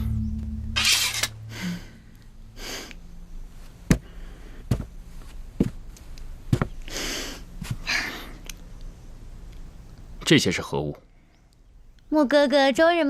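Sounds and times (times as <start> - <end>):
footsteps on hard floor: 4.7 - 5.8, 6.5 - 6.8.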